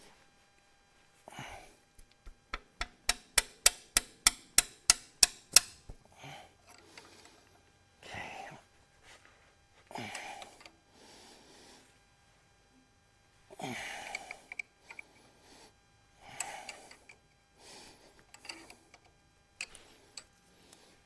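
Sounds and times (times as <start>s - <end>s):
wrench clicking on bolt: 2.5s - 6.0s, 18.3s - 20.3s
heavy strained breathing: 9.9s - 11.9s, 13.5s - 18.9s.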